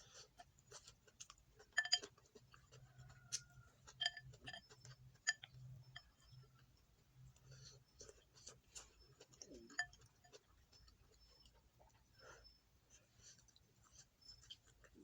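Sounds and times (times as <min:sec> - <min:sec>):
utensils clinking against a bowl: 0:01.5 - 0:06.6, 0:07.4 - 0:11.5.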